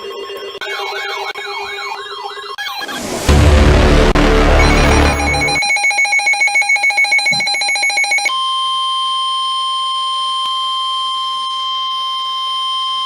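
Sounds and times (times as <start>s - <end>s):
rapid electronic alert beeping: 0.6s - 3.1s, 4.2s - 8.3s
steady high-pitched alarm tone: 4.4s - 8.3s.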